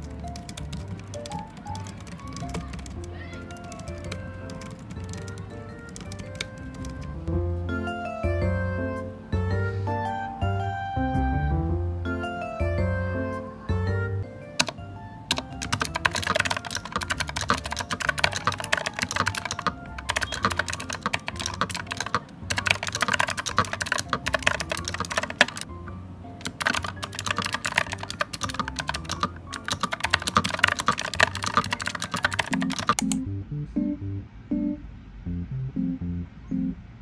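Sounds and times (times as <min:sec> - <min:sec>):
keyboard key clicks: 0:00.0 - 0:07.1, 0:14.6 - 0:25.7, 0:26.4 - 0:33.2
background music: 0:00.0 - 0:37.0.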